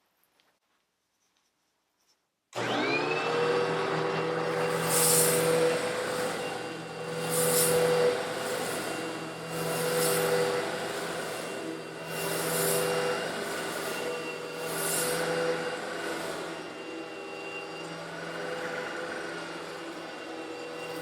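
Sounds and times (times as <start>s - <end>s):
vacuum cleaner motor whine: 2.6s - 21.0s
stone granules sucked up hiss: 4.7s - 5.5s, 7.2s - 8.9s, 9.5s - 11.4s, 12.0s - 14.0s, 14.6s - 15.2s.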